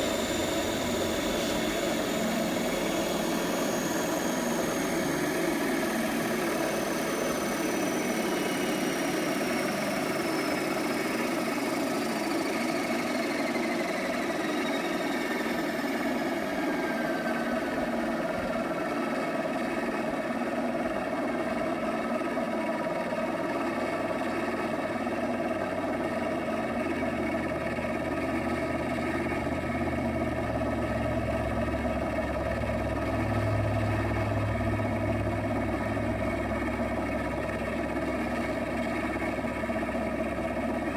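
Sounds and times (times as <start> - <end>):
low hum: 0.0 - 8.2, 30.2 - 40.9
mechanical drone: 0.0 - 19.8, 29.1 - 40.9
model helicopter whine winding down: 0.0 - 40.9.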